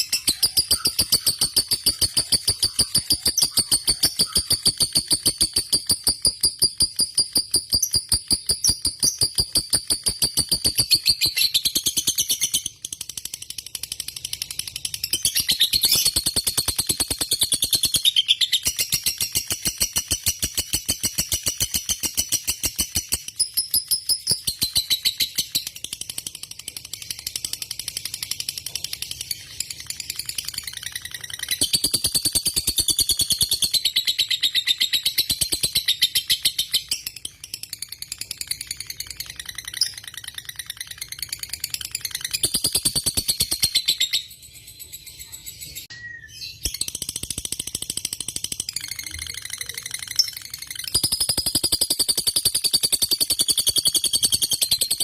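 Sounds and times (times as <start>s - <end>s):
lovebird chattering trill: 0.0s - 12.9s, 26.7s - 44.3s, 48.6s - 55.0s.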